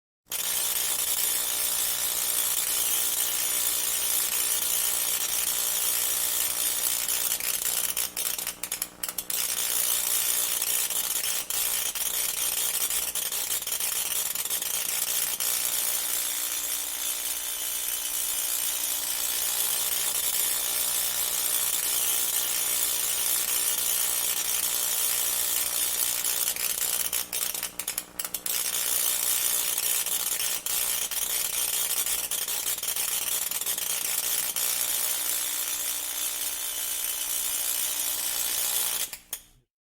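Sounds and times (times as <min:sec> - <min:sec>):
tesla coil sparks crackling: 0:23.0 - 0:39.4.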